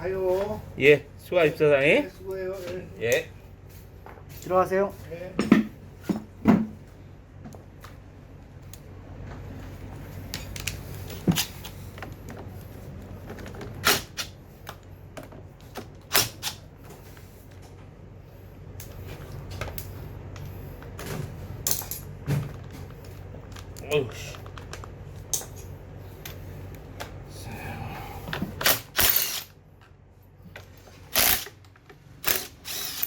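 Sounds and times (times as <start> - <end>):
tools and parts clicking: 21.6 - 22.2, 28.6 - 30.0, 30.6 - 33.0.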